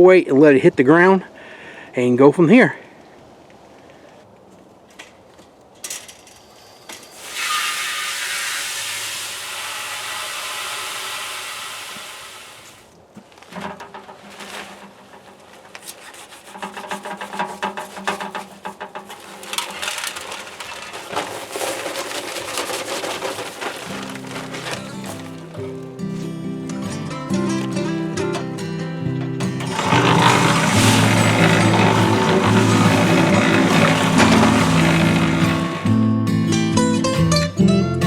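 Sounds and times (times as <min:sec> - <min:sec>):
dry concrete mix pouring: 0:07.1 - 0:12.9, 0:13.5 - 0:26.3, 0:29.3 - 0:36.6
concrete mix tumbling in drum: 0:11.8 - 0:26.1, 0:29.2 - 0:36.1.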